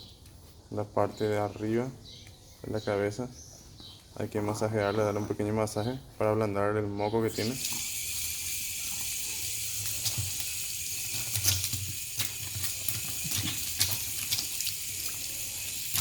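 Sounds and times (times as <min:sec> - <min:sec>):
tap water running: 0:07.3 - 0:16.0
water splashes: 0:07.3 - 0:16.0.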